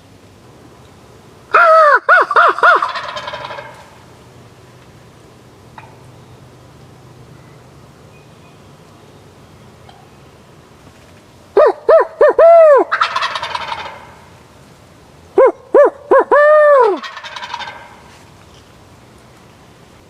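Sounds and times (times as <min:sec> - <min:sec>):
owl hooting call: 0:01.5 - 0:03.8, 0:11.6 - 0:14.3, 0:15.4 - 0:18.0
turkey gobbling: 0:01.5 - 0:04.0, 0:11.6 - 0:14.3, 0:15.4 - 0:18.0.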